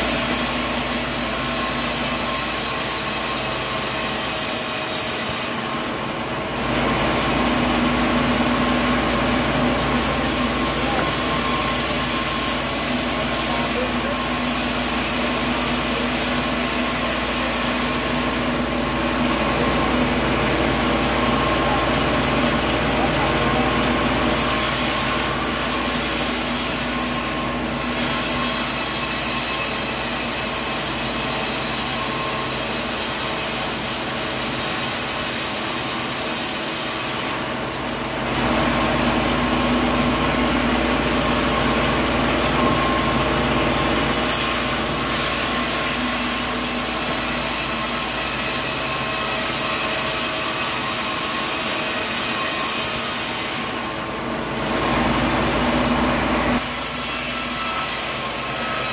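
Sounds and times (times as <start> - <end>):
mill motor running: 0.0 - 36.1
saw cutting through log: 0.0 - 58.9.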